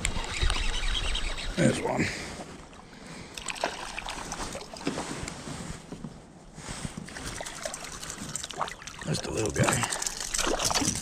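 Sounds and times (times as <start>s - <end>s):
fishing reel and kayak clicks: 0.0s - 1.5s.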